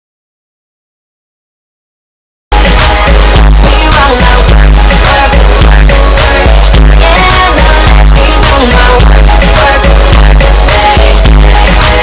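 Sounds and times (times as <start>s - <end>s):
music with heavy bass beat: 2.5s - 12.0s.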